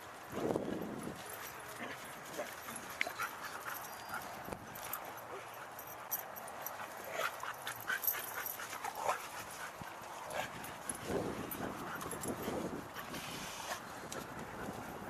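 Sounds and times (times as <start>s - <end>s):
dogs yipping and whining: 2.7s - 9.0s.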